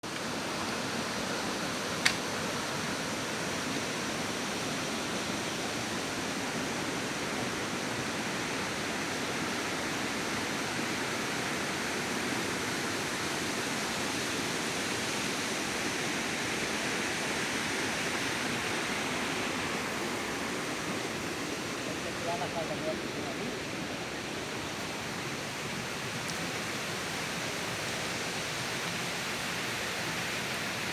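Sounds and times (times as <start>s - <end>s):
flowing water rushing: 0.0s - 30.9s
sharp click: 2.0s - 2.2s.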